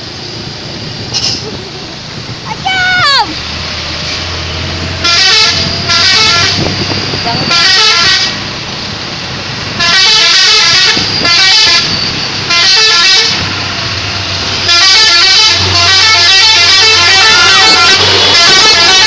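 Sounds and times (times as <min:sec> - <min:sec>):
low engine hum: 0:00.0 - 0:09.8
truck horn playing a tune: 0:05.0 - 0:08.5, 0:09.8 - 0:11.9, 0:12.5 - 0:13.5, 0:14.7 - 0:19.0.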